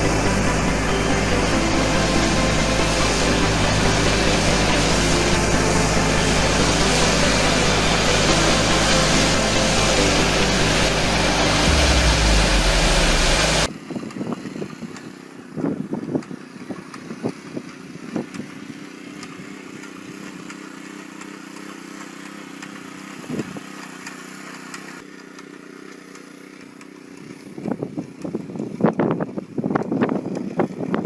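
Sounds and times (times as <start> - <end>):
loud machine engine: 0.0 - 13.7
steady mechanical hum: 0.0 - 30.9.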